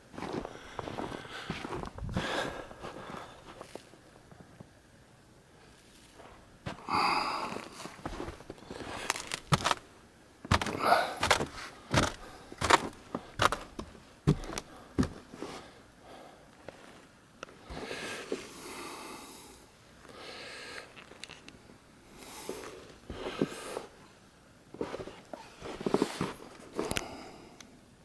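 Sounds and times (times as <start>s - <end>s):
footsteps crunching in snow: 0.2s - 3.8s, 7.5s - 9.9s, 10.5s - 15.5s
soft breathing: 0.4s - 3.8s, 10.5s - 17.0s.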